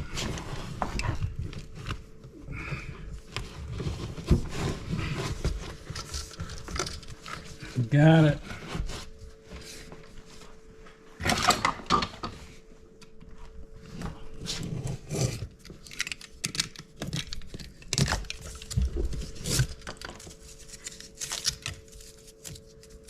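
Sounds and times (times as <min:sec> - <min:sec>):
faint steady hum: 0:00.0 - 0:23.0.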